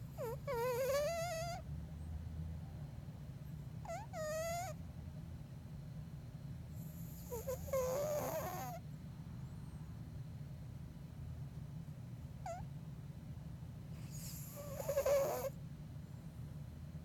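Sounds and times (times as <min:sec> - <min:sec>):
cat snoring: 0:00.1 - 0:01.6, 0:03.8 - 0:04.8, 0:06.8 - 0:08.8, 0:14.0 - 0:15.6.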